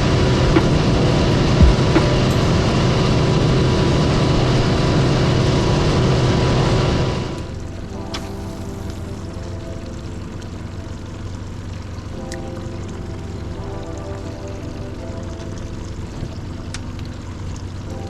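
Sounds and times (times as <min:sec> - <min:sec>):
water noise: 0:06.1 - 0:18.0.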